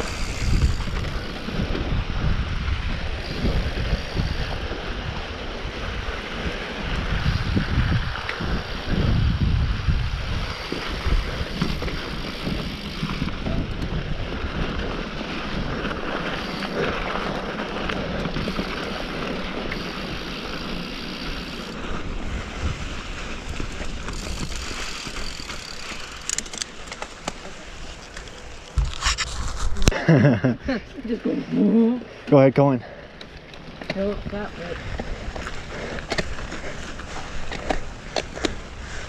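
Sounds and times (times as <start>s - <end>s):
wind on microphone: 0.0s - 17.2s, 21.8s - 25.8s
bike tyres rattling over rocks: 0.0s - 30.0s, 33.1s - 39.0s.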